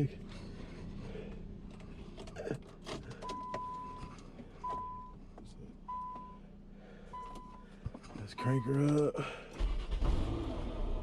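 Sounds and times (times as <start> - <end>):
dashboard warning chime beeping: 3.2 - 5.2, 5.9 - 6.4, 7.1 - 7.7, 8.3 - 9.2.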